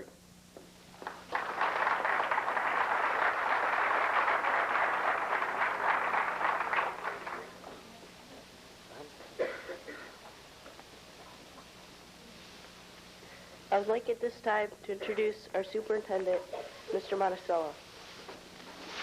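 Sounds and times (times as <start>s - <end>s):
audience applauding: 1.0s - 7.9s.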